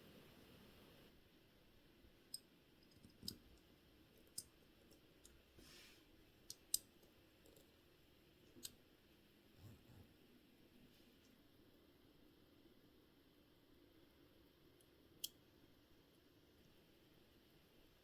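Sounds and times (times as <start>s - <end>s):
small tools clicking and tapping: 2.3s - 5.4s, 6.4s - 7.8s
soft rustle: 5.6s - 6.1s.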